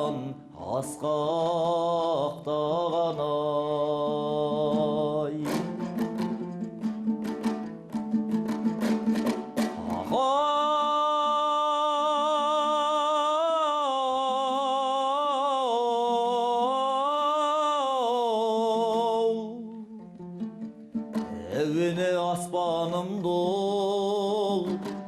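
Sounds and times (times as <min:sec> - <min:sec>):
person singing long ornamented note: 0:09.8 - 0:19.7.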